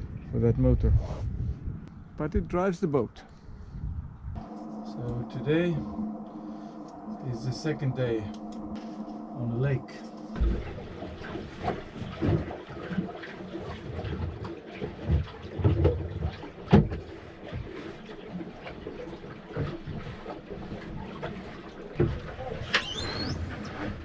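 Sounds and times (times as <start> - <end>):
water sloshing against hull: 3.3 - 24.0
knocks and thumps: 10.4 - 11.0.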